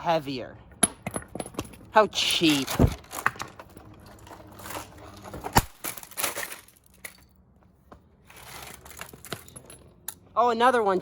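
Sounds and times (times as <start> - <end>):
plastic rustling and scraping: 2.4 - 7.0, 8.3 - 9.6.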